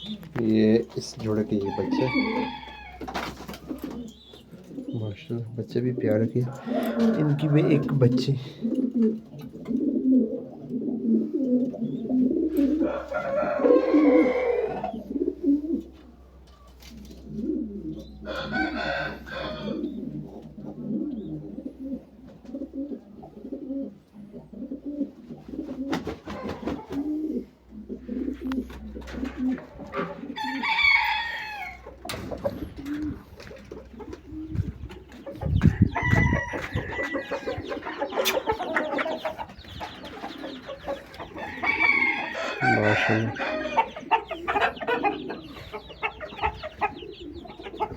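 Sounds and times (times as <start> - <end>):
pigeons cooing: 0.0 - 47.9
rooster calling: 1.5 - 3.2, 6.4 - 8.1, 12.6 - 15.1, 18.2 - 19.9, 29.9 - 32.2, 35.5 - 47.9.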